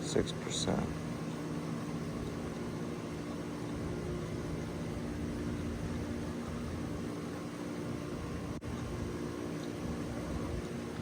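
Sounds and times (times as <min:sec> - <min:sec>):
steady mechanical hum: 0:00.0 - 0:11.0.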